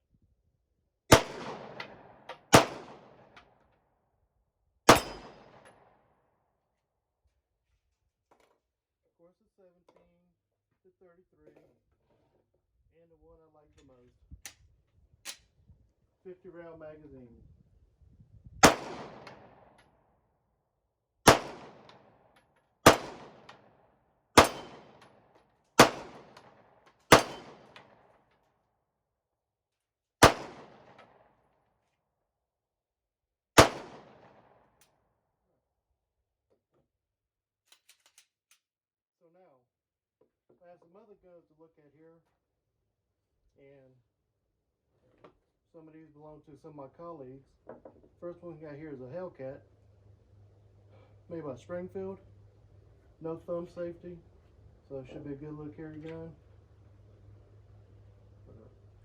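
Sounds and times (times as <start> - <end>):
gunshots with ringing echo: 1.1 - 3.3, 4.9 - 5.9, 18.6 - 19.7, 21.2 - 22.2, 22.8 - 23.7, 24.4 - 25.0, 25.8 - 28.0, 30.2 - 31.0, 33.6 - 34.6.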